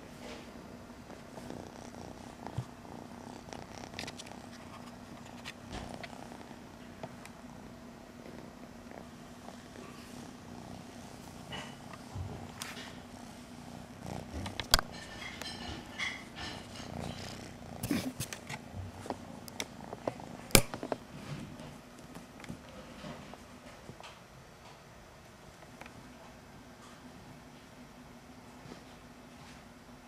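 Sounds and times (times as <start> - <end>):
kitten purring: 0.0 - 23.4.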